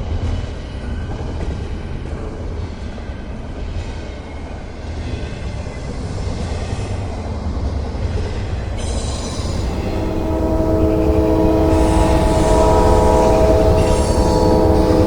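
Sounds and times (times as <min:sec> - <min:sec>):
train rumbling: 0:08.6 - 0:15.0
locomotive air horn chord: 0:08.7 - 0:15.0.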